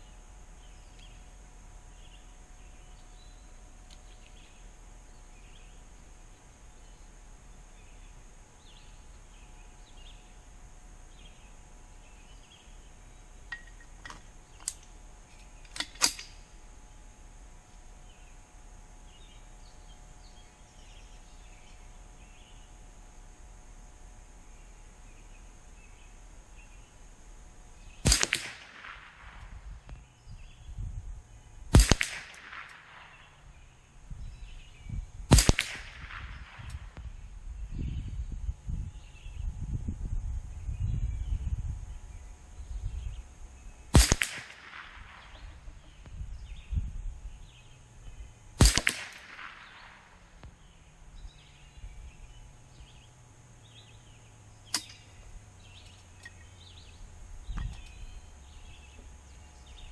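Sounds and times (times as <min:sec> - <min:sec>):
rifle shots with echo: 0:28.0 - 0:29.8, 0:31.7 - 0:33.4, 0:35.3 - 0:37.0, 0:43.9 - 0:45.9, 0:48.6 - 0:50.4.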